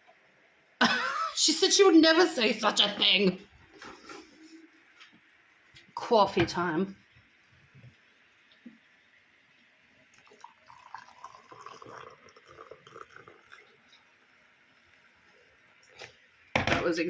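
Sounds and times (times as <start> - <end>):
liquid pouring into a mug: 9.8 - 16.6.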